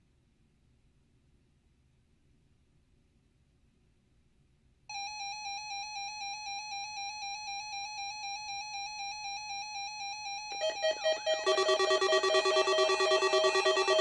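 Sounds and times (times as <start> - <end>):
steady electronic beep tone: 10.6 - 14.0
warbling electronic tones: 10.6 - 14.0.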